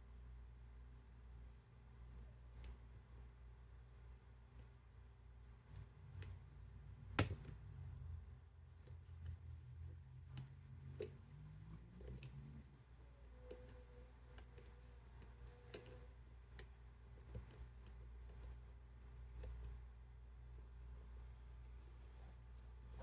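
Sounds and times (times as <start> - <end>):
low steady hum: 0.0 - 23.0
lock pick clicking: 7.2 - 7.6.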